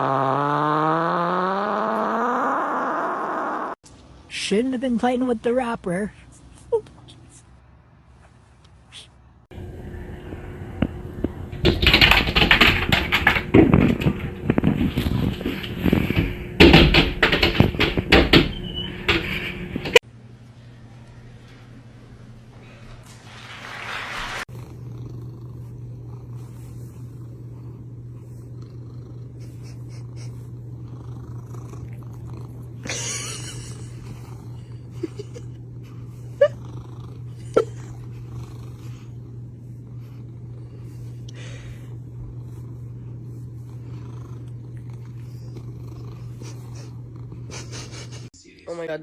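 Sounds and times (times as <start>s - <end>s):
cat purring: 0.0s - 3.8s, 11.2s - 16.3s, 24.5s - 48.3s.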